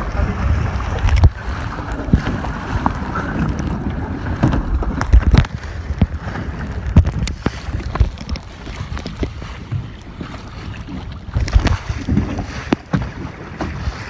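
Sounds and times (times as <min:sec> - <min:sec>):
wind buffeting microphone: 0:00.0 - 0:14.0
knocks and thumps: 0:04.4 - 0:09.8.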